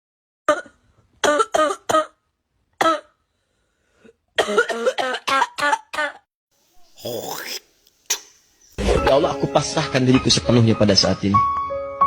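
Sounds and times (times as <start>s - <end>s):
person coughing: 2.8s - 3.2s, 4.4s - 6.2s.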